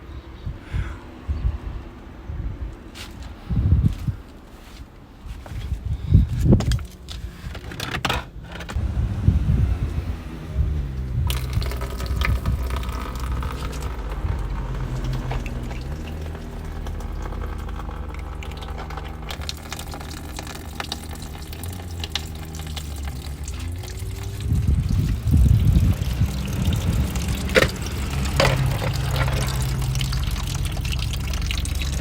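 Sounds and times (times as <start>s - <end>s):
motorcycle engine idling: 8.8s - 32.0s
watery hissing mechanical noise: 8.8s - 32.0s.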